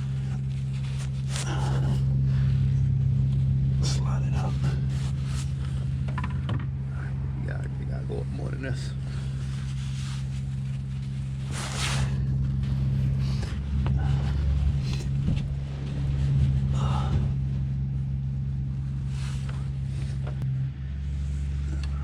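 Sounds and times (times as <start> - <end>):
rubber hose scraping and rustling: 0.0 - 6.5, 8.7 - 17.7
low mechanical hum: 0.0 - 22.0.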